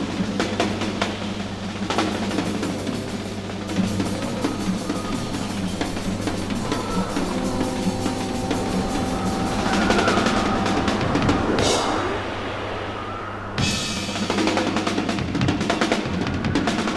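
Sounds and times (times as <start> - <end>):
held higher tones: 2.8 - 14.5.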